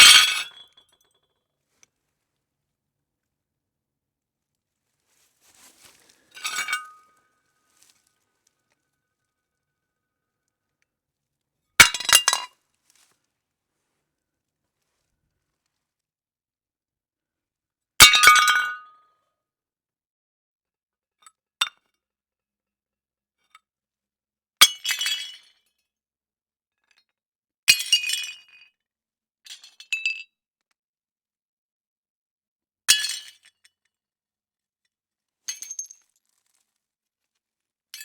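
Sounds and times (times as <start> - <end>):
shards clinking and scattering: 6.4 - 7.1.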